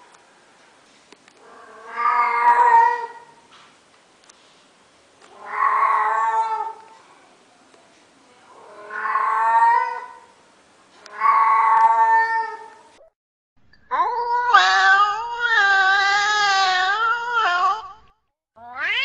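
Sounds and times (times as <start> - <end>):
cat yowling: 1.7 - 3.3, 13.9 - 17.8, 18.6 - 19.0.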